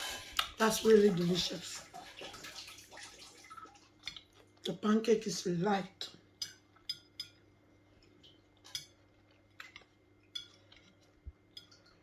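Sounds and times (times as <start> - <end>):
cutlery clinking on a plate: 6.4 - 7.4.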